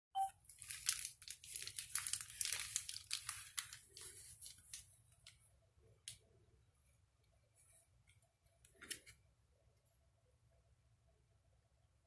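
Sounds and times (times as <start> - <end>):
plastic packaging crinkling: 0.4 - 5.3.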